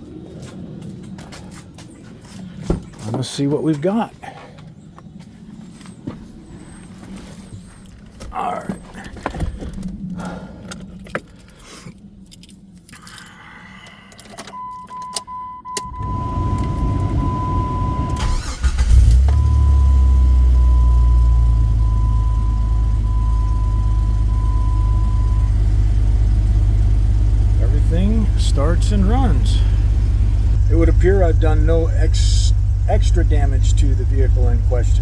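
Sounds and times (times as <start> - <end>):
keys jangling: 10.7 - 15.2
car engine cranking and idling: 13.8 - 35.0.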